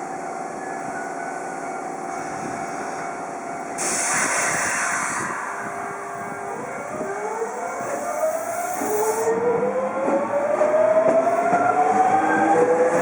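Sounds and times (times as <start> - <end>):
loud hiss: 3.8 - 6.0.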